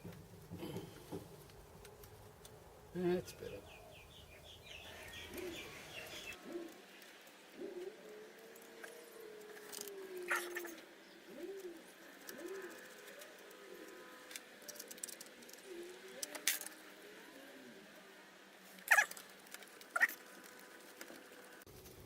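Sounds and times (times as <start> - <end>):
faint bird chirps: 3.4 - 7.1
bird cooing: 3.6 - 17.9, 18.9 - 19.2, 19.9 - 20.2.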